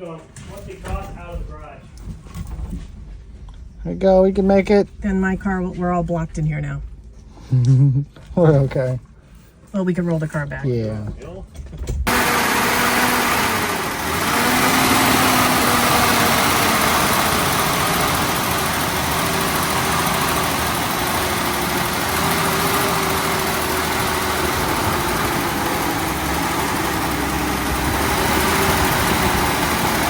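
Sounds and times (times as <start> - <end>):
car engine fast idle: 12.1 - 30.0.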